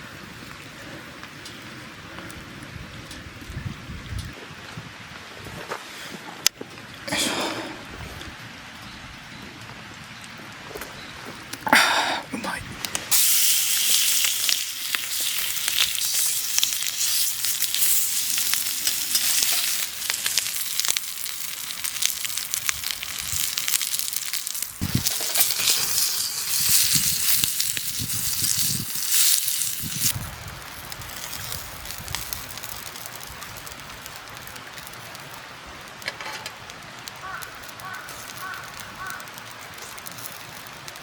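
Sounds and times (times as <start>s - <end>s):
food sizzling in frying pan: 13.1s - 35.3s, 37.2s - 41.0s.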